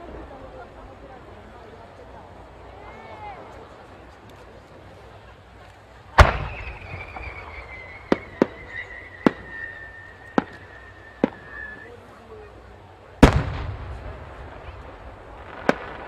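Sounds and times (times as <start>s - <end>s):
firework cracks: 6.1s - 12.0s, 13.1s - 16.0s
loud rolling firework boom: 6.2s - 11.9s, 13.2s - 16.0s
firework whistle falling in pitch: 6.3s - 12.0s.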